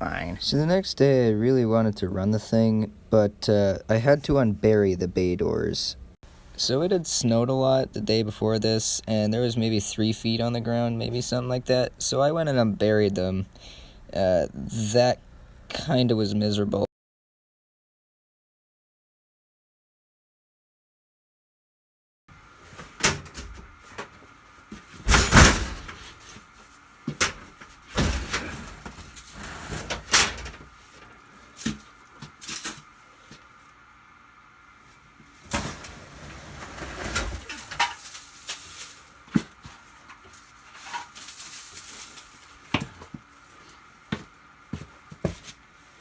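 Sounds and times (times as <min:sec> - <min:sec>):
rustling and scraping: 0:22.6 - 0:33.6, 0:34.8 - 0:45.6.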